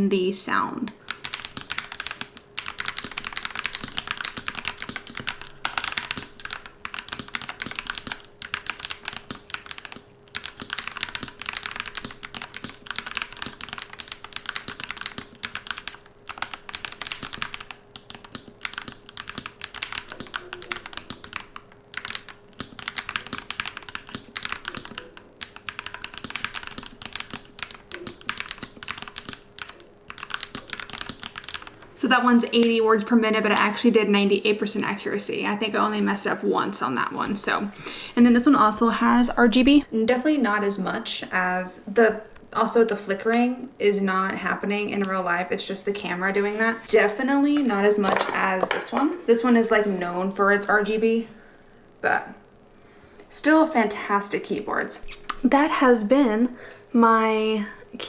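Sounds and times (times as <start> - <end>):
mechanical keyboard typing: 1.0 - 31.9, 48.0 - 49.0.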